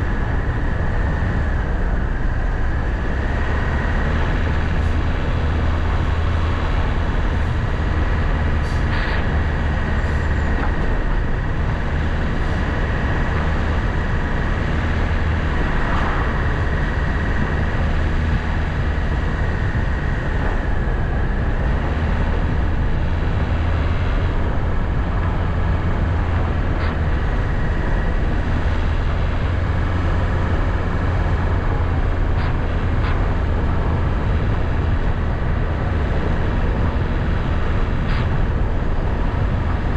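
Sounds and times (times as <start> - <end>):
vehicle engine and road noise: 0.0 - 39.9.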